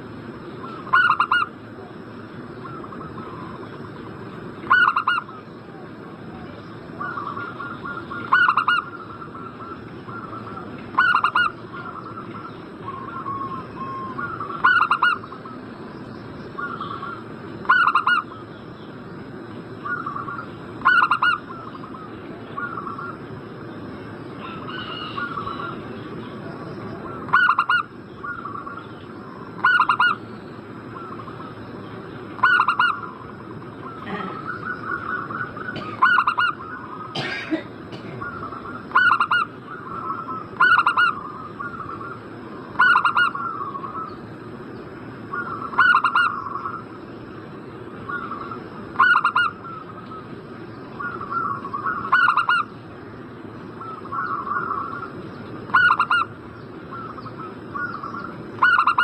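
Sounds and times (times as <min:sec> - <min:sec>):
dove cooing: 0:00.6 - 0:02.0, 0:02.6 - 0:04.0, 0:04.6 - 0:15.6, 0:16.6 - 0:18.4, 0:19.8 - 0:23.2, 0:24.4 - 0:30.2, 0:32.4 - 0:44.2, 0:45.3 - 0:46.9, 0:48.1 - 0:50.3, 0:50.9 - 0:52.7, 0:53.8 - 0:55.1, 0:55.7 - 0:59.0.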